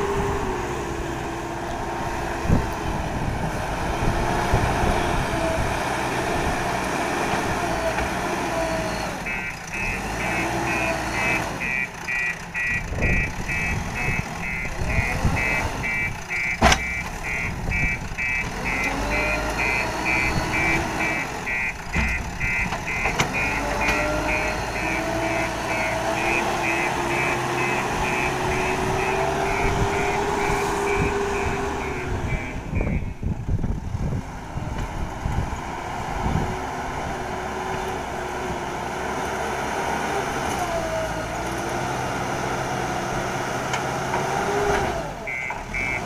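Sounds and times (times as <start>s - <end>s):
diesel engine working under load: 0.0s - 46.0s
high electronic beeps: 8.9s - 33.2s.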